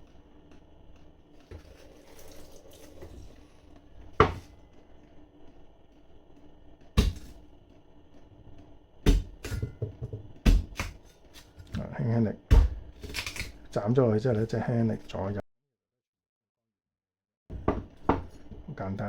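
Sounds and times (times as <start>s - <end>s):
cleaver chopping on board: 7.0s - 7.4s, 9.1s - 11.0s, 12.5s - 12.9s.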